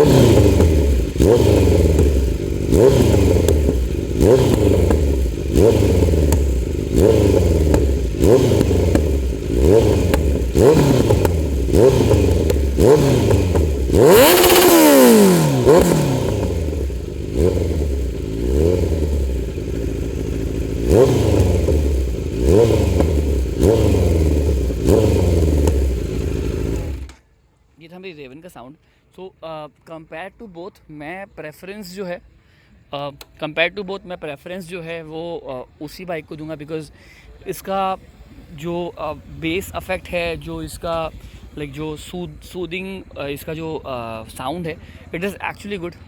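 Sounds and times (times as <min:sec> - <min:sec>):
motorcycle engine revving: 0:00.0 - 0:27.2, 0:38.1 - 0:43.2.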